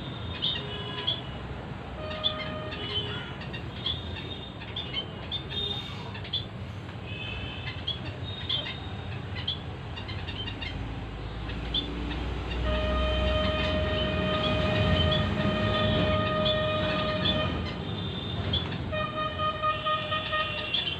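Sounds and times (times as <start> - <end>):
horn long steady note: 12.6 - 17.6, 18.9 - 20.6.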